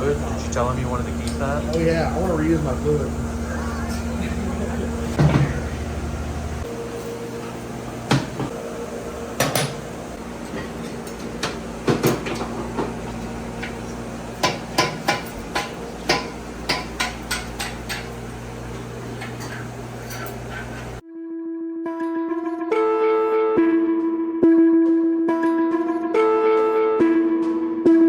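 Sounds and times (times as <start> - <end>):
metal tools clanking: 0.0 - 5.8, 10.4 - 21.0
steady shop hum: 0.0 - 21.0.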